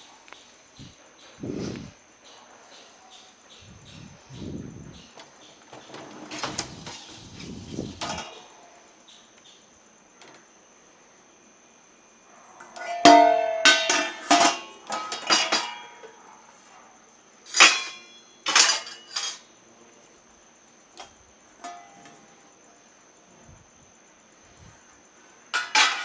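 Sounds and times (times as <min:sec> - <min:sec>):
metal dishwasher rack clattering: 0:12.8 - 0:16.0, 0:17.5 - 0:19.4, 0:25.6 - 0:26.0.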